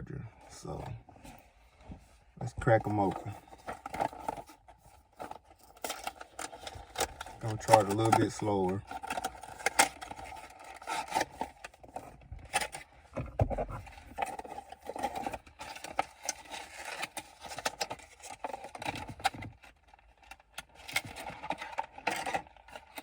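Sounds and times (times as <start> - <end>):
packaging clicks and rustles: 2.5 - 23.0.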